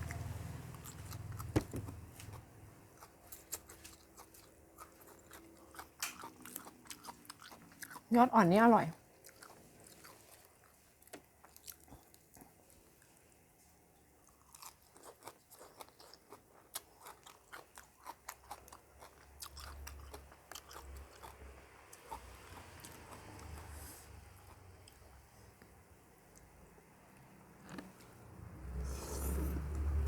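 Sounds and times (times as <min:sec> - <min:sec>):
chewing crisp raw vegetables: 0:00.0 - 0:13.5, 0:14.2 - 0:26.5, 0:27.2 - 0:30.0.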